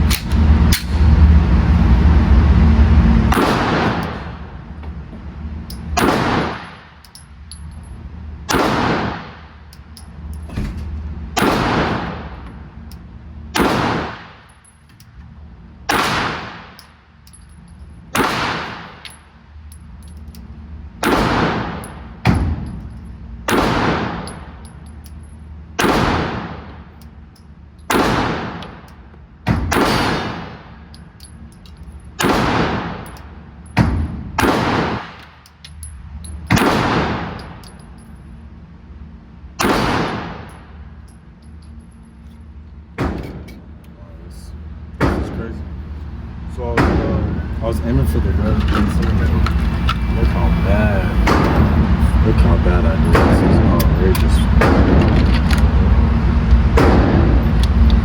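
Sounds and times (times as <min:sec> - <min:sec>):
loud low rumbling: 0:00.0 - 0:27.0, 0:35.8 - 0:58.0
pistol shots with echo: 0:03.3 - 0:04.2, 0:06.0 - 0:06.8, 0:08.5 - 0:09.5, 0:11.4 - 0:12.3, 0:13.6 - 0:14.4, 0:15.9 - 0:16.8, 0:18.2 - 0:19.0, 0:21.0 - 0:22.4, 0:23.5 - 0:24.4, 0:25.8 - 0:26.7, 0:27.9 - 0:28.8, 0:29.5 - 0:30.6, 0:32.2 - 0:33.1, 0:33.8 - 0:35.2, 0:36.5 - 0:37.4, 0:39.6 - 0:40.5.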